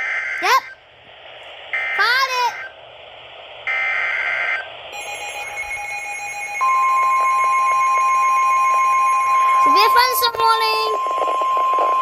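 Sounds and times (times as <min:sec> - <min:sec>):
buzzy data burst: 0:03.6 - 0:12.0
steady warning alarm tone: 0:03.6 - 0:12.0
faint pulsing beep: 0:06.6 - 0:12.0.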